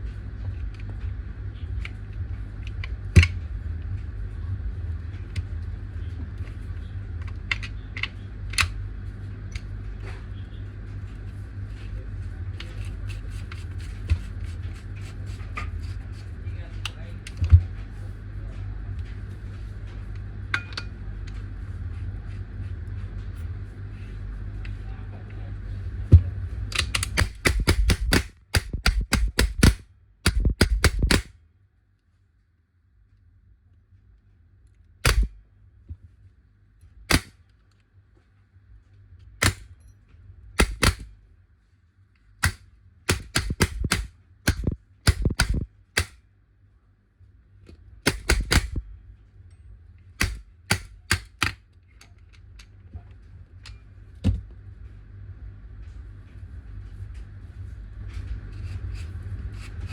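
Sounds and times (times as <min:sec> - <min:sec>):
low hum: 0:00.0 - 0:59.9
paintball marker firing: 0:26.8 - 0:31.4, 0:35.0 - 0:35.4, 0:37.1 - 0:37.4, 0:39.4 - 0:39.7, 0:40.6 - 0:41.1, 0:42.4 - 0:46.2, 0:48.1 - 0:48.8, 0:50.2 - 0:51.6.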